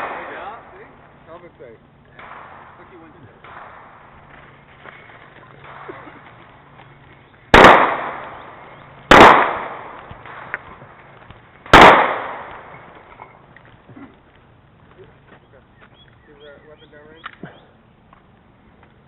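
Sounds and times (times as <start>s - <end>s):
handgun shots with echo: 7.5s - 8.5s, 9.1s - 10.7s, 11.7s - 12.8s.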